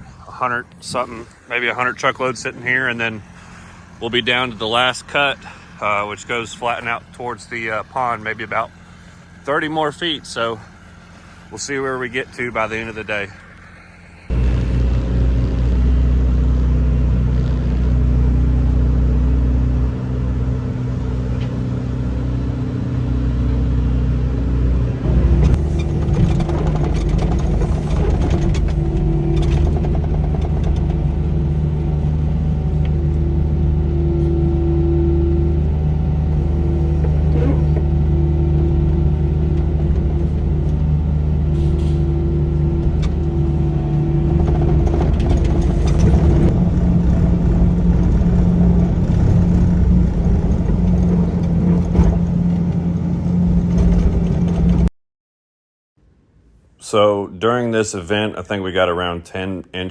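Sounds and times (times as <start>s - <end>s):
diesel engine running: 0.0s - 54.9s
machine whine: 0.8s - 52.2s.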